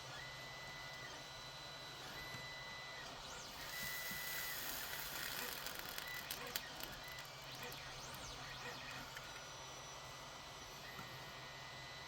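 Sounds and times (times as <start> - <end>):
low electrical hum: 1.7 - 12.0.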